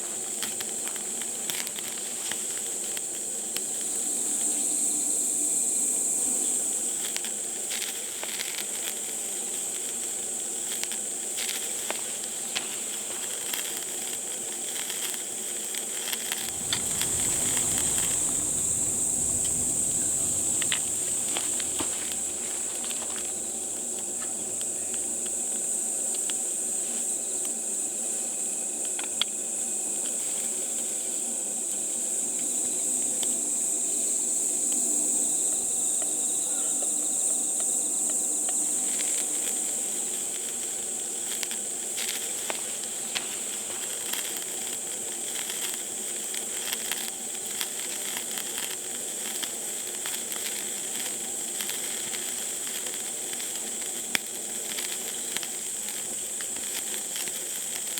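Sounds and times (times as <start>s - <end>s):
crackling sizzle with pops: 0.0s - 33.8s, 35.4s - 57.9s
crickets chirring: 16.3s - 27.8s, 35.6s - 57.9s.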